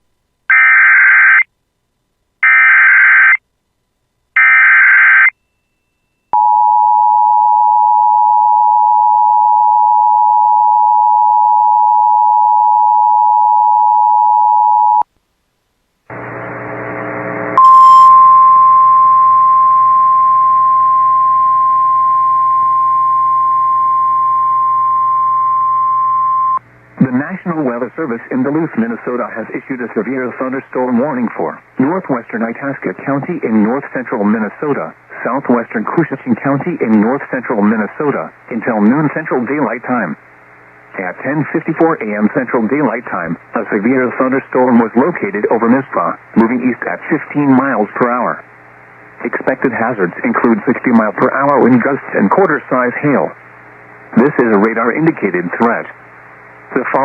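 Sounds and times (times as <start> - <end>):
two-tone attention signal: 17.6 - 26.6.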